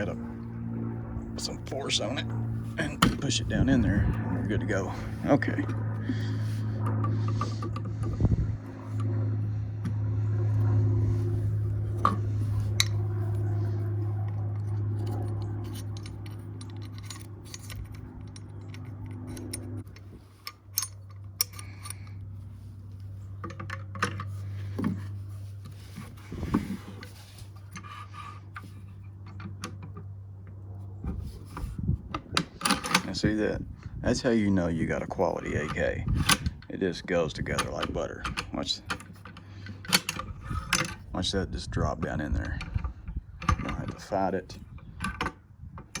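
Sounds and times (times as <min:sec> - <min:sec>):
steady low hum: 0:00.0 - 0:46.0
metal rifle parts clicking: 0:14.5 - 0:22.2, 0:32.3 - 0:33.3, 0:37.5 - 0:41.0.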